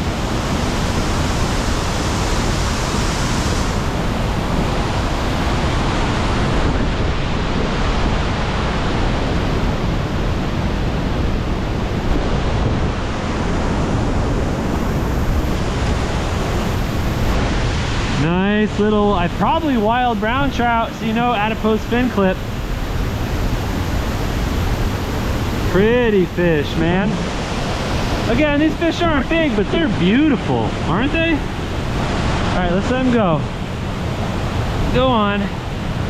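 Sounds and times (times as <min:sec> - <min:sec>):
waterfall rushing: 0:00.0 - 0:36.0.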